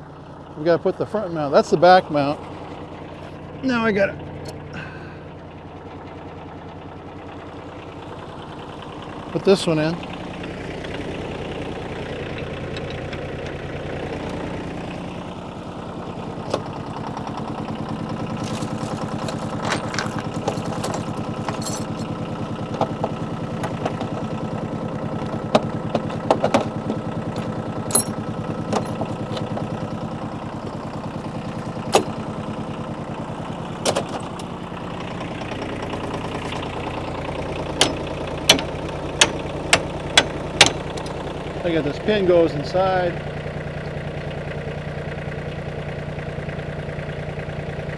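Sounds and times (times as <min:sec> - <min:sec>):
tractor engine idling: 0:00.0 - 0:47.9
metallic clanks and clicks: 0:18.4 - 0:29.7, 0:31.1 - 0:32.2, 0:33.9 - 0:34.5, 0:37.8 - 0:41.2.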